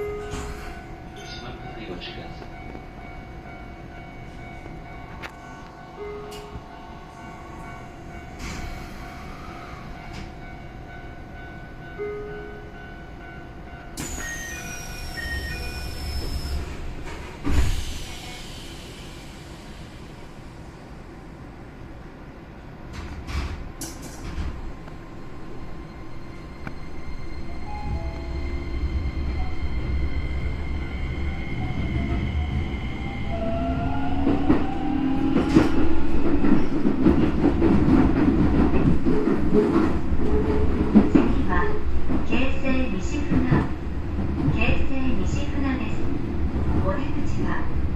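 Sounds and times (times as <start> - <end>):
train doors shutting thud: 0.2 - 0.8, 8.4 - 8.8, 17.0 - 18.2, 22.9 - 24.7
train door hiss: 17.4 - 20.2
train wheels clattering on rails: 22.9 - 24.6, 34.2 - 44.8.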